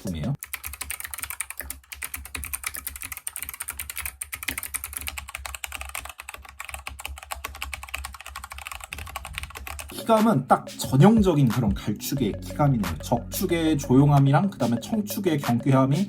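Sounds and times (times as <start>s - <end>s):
fast mechanical keyboard typing: 0.0s - 10.1s.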